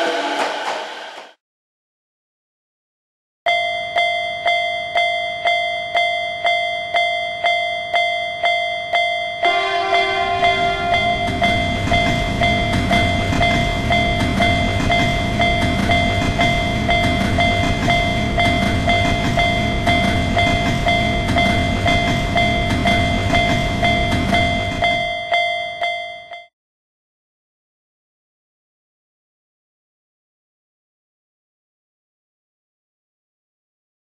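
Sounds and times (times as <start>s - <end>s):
level-crossing warning bell: 3.5s - 26.5s
train passing with low rumble: 9.4s - 25.4s.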